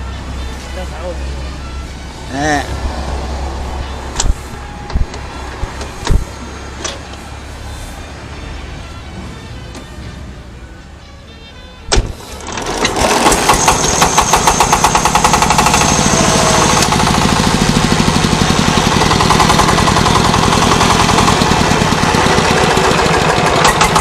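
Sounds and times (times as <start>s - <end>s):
diesel engine knocking: 12.4s - 24.0s.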